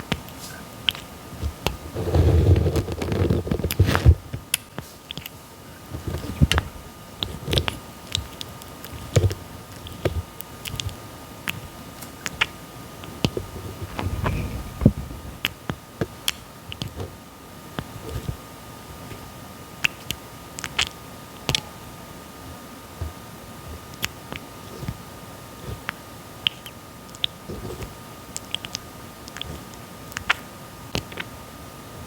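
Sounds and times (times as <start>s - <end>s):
tortoise beak clicking while chewing: 25.8s - 30.4s.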